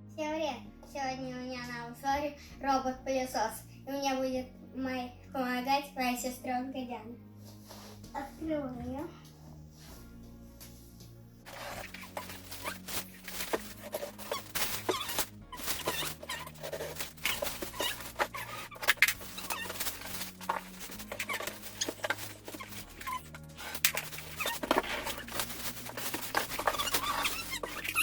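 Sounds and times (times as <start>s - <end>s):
quiet background music: 0.0s - 28.0s
cardboard box being opened: 11.5s - 28.0s.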